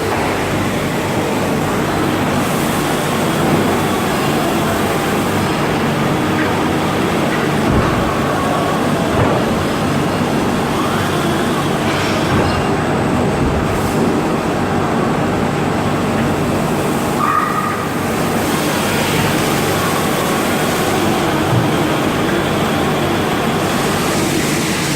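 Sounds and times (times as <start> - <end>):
machine running loudly: 0.0 - 24.9.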